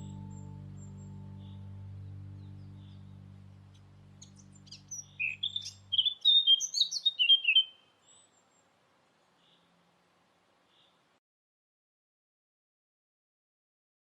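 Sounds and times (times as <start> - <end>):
low background music: 0.0 - 6.2
songbird singing: 0.0 - 9.8.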